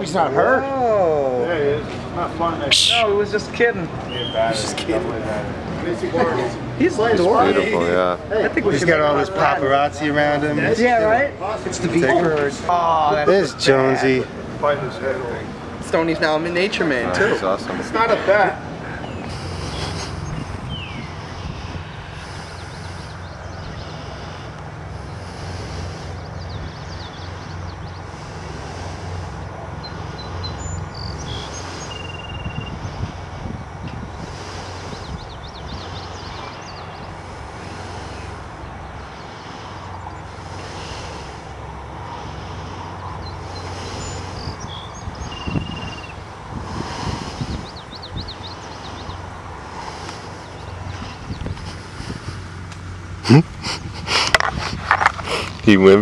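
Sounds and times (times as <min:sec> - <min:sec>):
engine humming: 0:00.0 - 0:56.0.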